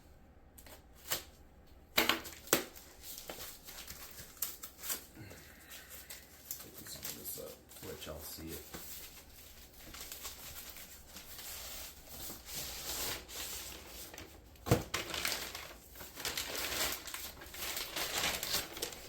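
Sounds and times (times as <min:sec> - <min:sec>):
wrapping crinkling and tearing: 0:02.1 - 0:19.0.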